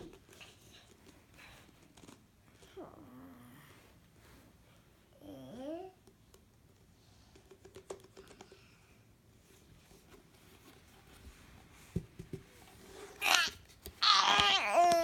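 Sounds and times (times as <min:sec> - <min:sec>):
small objects clicking and tapping: 0:07.3 - 0:08.6.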